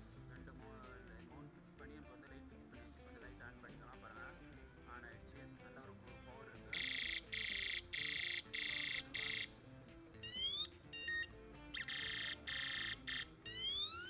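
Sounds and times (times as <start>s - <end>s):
quiet background music: 0.0s - 14.0s
pulsed electronic beeps: 6.7s - 9.6s, 10.2s - 14.0s.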